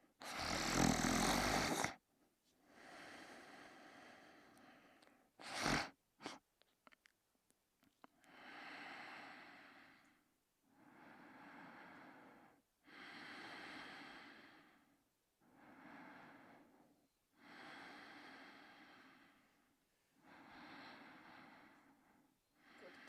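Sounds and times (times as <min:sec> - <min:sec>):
person snoring: 0:00.2 - 0:02.0, 0:05.4 - 0:06.4.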